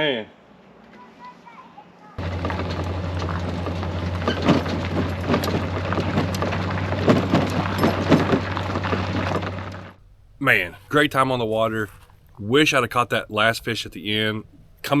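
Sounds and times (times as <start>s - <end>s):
crackling splashing water: 2.2s - 10.0s
low hum: 2.2s - 10.9s.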